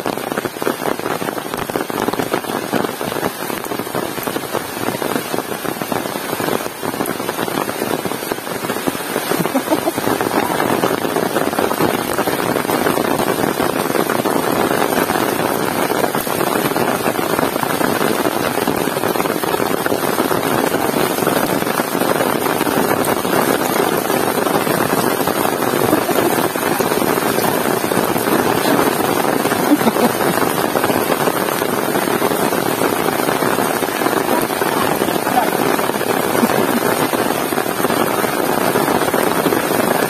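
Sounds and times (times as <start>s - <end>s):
heavy rain pouring: 0.0s - 40.0s.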